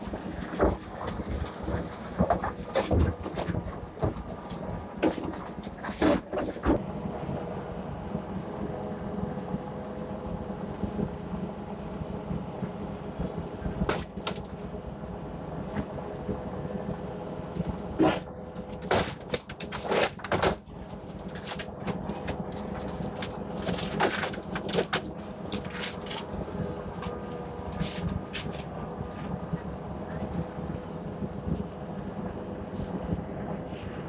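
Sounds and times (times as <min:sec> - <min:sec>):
excavator engine running: 0:00.0 - 0:34.0
concrete cracking and crunching: 0:13.8 - 0:14.6, 0:17.6 - 0:26.4.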